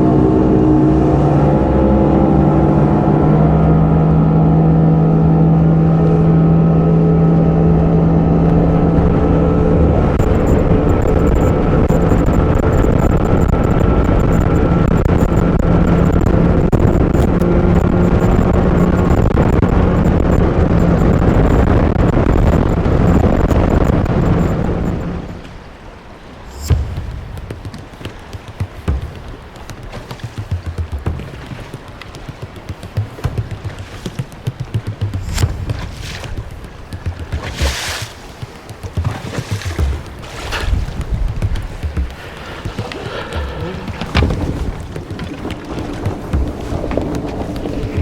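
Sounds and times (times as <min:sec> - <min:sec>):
rushing water: 0:00.0 - 0:48.0
wind: 0:00.0 - 0:48.0
outboard motor running hard: 0:39.0 - 0:48.0.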